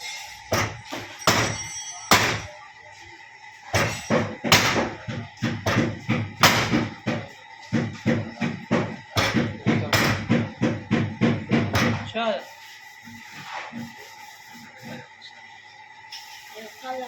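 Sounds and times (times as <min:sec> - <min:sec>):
hammer striking sheet metal: 0:00.0 - 0:02.5, 0:03.7 - 0:12.1.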